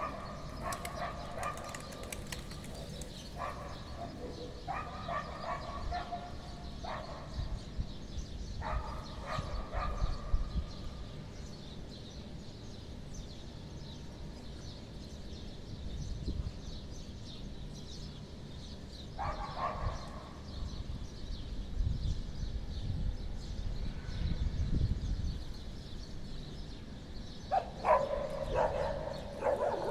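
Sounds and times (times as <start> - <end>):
dog barking: 0.0 - 2.0, 3.4 - 7.3, 8.6 - 10.2, 19.2 - 20.2, 27.5 - 29.9.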